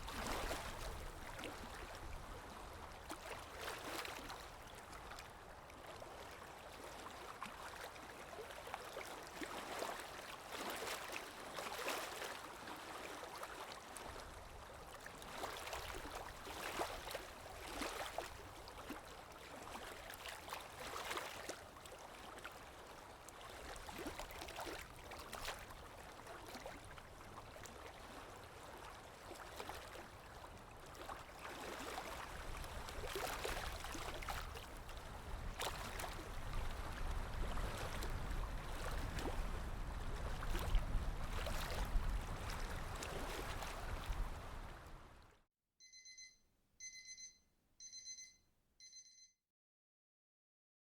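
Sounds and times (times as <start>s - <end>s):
water lapping: 0.0s - 45.2s
low rumble of wind: 32.3s - 45.2s.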